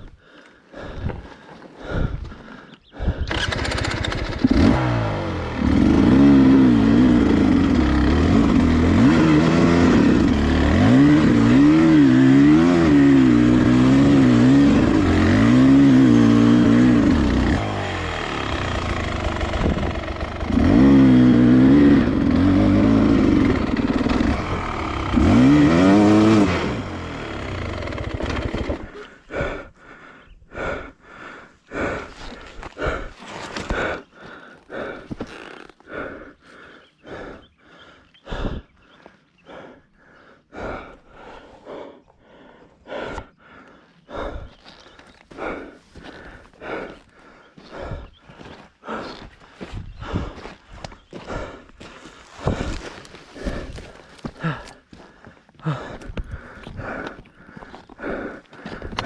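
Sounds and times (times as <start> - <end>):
dirt bike engine revving: 3.2 - 29.5.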